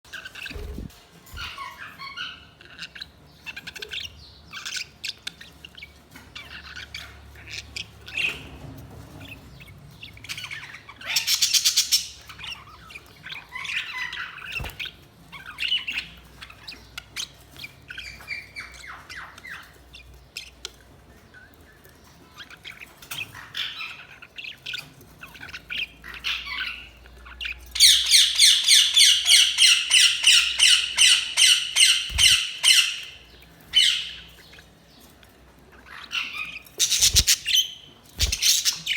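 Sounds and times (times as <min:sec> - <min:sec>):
budgerigars chirping and warbling: 0:00.1 - 0:38.9
squawky bird calls: 0:36.0 - 0:38.9.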